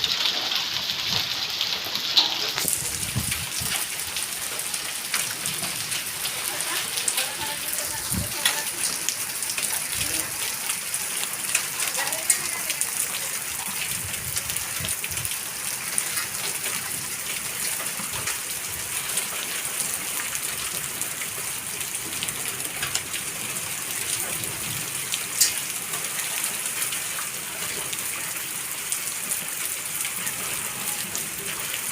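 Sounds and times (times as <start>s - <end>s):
hailstones striking surfaces: 0.0s - 13.0s
heavy rain hissing: 0.0s - 31.9s.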